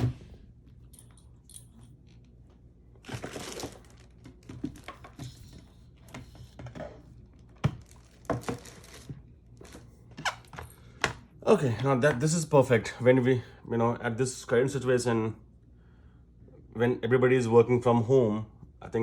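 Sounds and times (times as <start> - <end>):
crinkling rustle: 2.4 - 5.9, 6.6 - 10.4.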